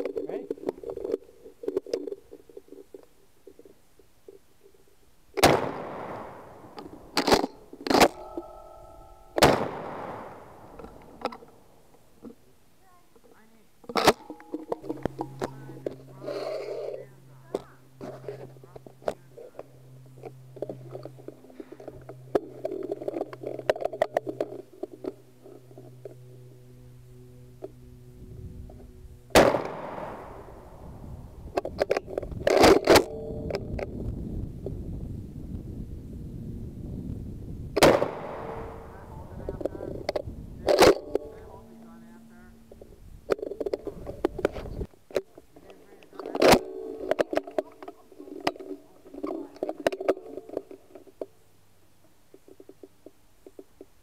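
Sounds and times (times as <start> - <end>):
steady low hum: 0.0 - 54.0
shotgun shot: 5.4 - 6.5, 9.4 - 10.6, 29.3 - 30.3, 37.8 - 38.8
shotgun clicks and knocks: 45.1 - 51.3.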